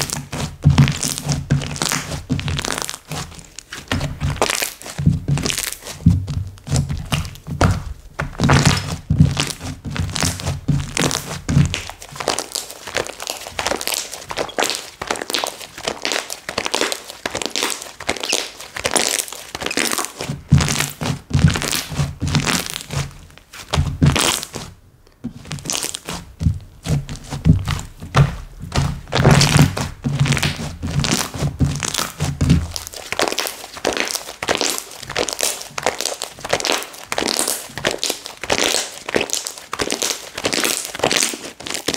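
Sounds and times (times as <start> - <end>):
slime dull thuds: 0.0 - 41.9.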